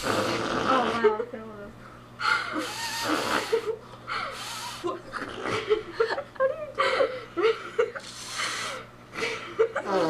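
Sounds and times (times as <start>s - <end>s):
person making fake fart noises: 0.0s - 1.0s, 2.7s - 3.7s, 4.5s - 5.7s
people giggling: 2.3s - 8.1s, 9.2s - 10.0s.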